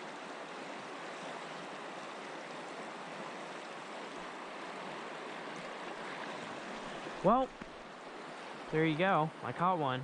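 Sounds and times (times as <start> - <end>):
mountain stream running: 0.0 - 10.0.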